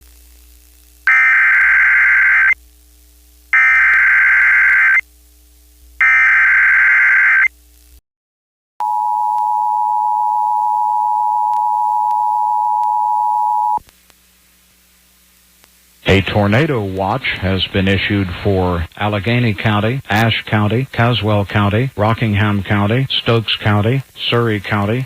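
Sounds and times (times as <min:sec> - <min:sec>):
two-tone attention signal: 0:08.8 - 0:13.8.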